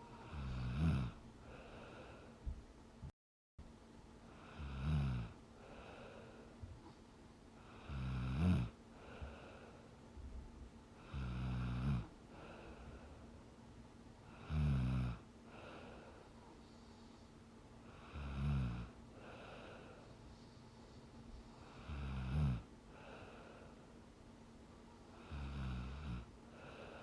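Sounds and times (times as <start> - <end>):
woman snoring: 0.0 - 2.2, 4.4 - 6.1, 7.7 - 8.8, 11.0 - 12.6, 14.3 - 15.8, 17.9 - 19.9, 21.6 - 23.4, 25.2 - 27.0
soft breathing: 0.0 - 3.1, 5.6 - 8.0, 8.8 - 11.3, 12.0 - 14.5, 15.4 - 22.1, 22.8 - 27.0.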